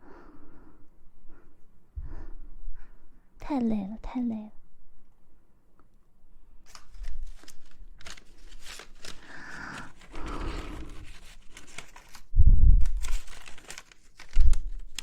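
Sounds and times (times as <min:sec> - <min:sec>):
close-miked rustling and crinkling: 0:06.6 - 0:15.0.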